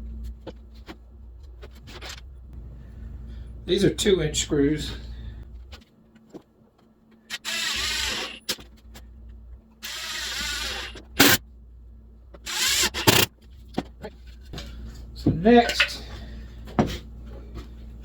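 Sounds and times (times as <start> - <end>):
power drill driving screws into wood: 7.3 - 8.6, 9.8 - 11.4, 12.4 - 13.3.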